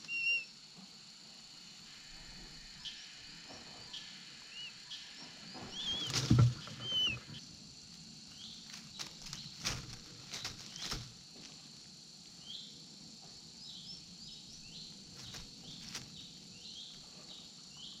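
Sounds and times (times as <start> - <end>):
high insect drone: 0.0 - 18.0
eagle chick chirping: 5.7 - 7.4.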